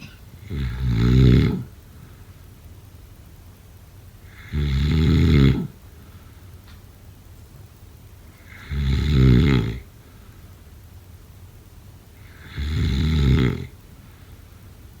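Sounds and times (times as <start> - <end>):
person snoring: 0.4 - 1.7, 4.3 - 5.7, 12.3 - 13.7.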